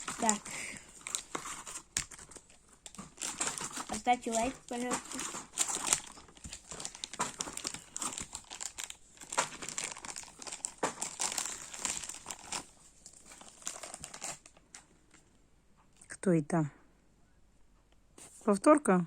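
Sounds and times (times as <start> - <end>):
wrapper crinkling and tearing: 0.0 - 14.8.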